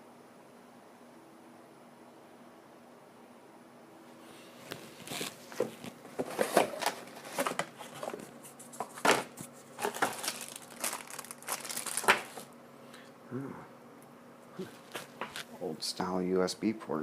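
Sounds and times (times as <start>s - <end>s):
packaging crinkling: 4.6s - 12.5s.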